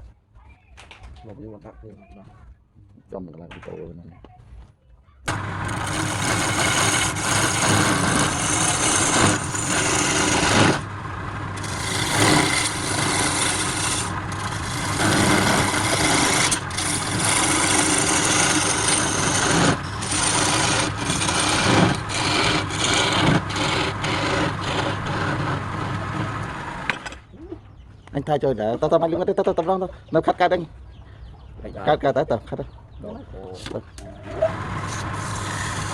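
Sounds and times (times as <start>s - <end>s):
lathe motor humming: 5.3s - 27.0s, 34.5s - 35.9s
tool scraping spinning wood: 5.3s - 27.2s, 34.2s - 35.9s.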